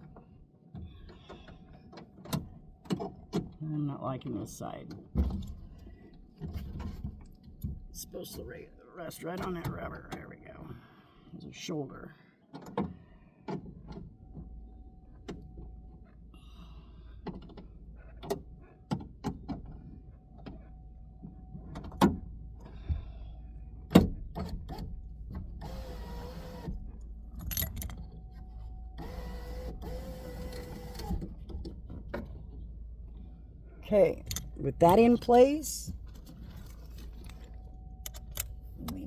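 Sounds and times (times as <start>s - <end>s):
power window motor running: 24.6s - 26.9s, 28.9s - 32.0s
clicks and knocks from handling parts: 27.0s - 28.2s, 34.2s - 35.0s, 35.9s - 39.0s.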